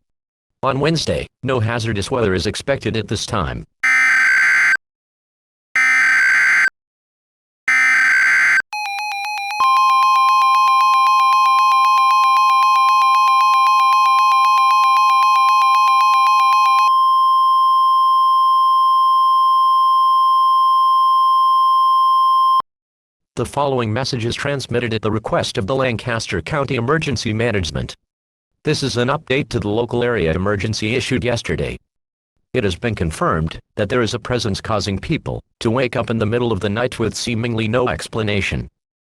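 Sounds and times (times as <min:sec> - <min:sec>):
rapidly beeping alert tone: 0:03.8 - 0:04.8, 0:05.8 - 0:06.7, 0:07.7 - 0:08.6
steady alert tone: 0:03.8 - 0:04.8, 0:05.8 - 0:06.7, 0:07.7 - 0:08.6
buzzing data bursts: 0:05.8 - 0:06.7.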